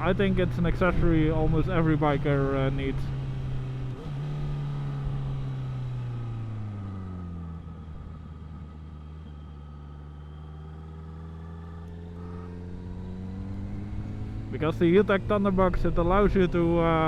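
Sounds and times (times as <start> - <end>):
motorcycle engine: 0.0 - 17.0.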